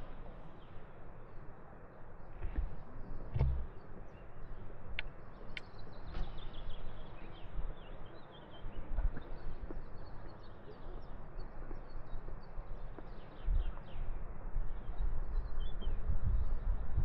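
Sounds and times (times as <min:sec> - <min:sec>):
outdoor ambience: 0:00.0 - 0:17.0
small birds chirping: 0:02.4 - 0:14.1
thuds on microphone: 0:03.3 - 0:03.7.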